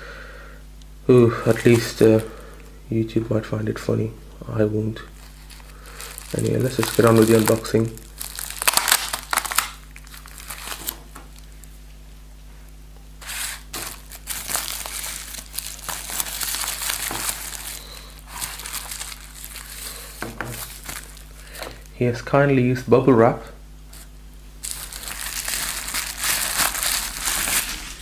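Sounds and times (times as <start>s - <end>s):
bubble wrap crinkling: 1.1s - 2.8s, 5.0s - 11.8s, 13.2s - 22.0s, 23.9s - 28.0s
plastic packaging unwrapped: 1.1s - 2.8s, 5.0s - 11.8s, 13.2s - 21.9s, 23.9s - 28.0s.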